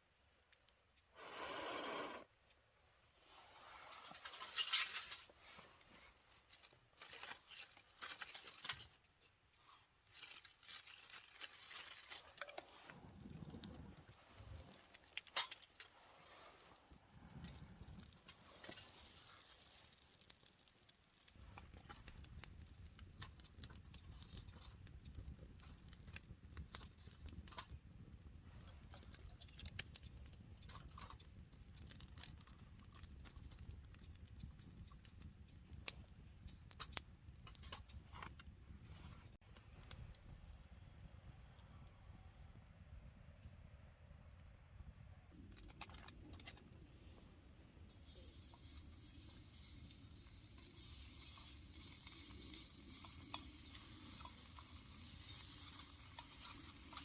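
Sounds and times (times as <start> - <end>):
things being handled rustling: 3.2 - 20.2.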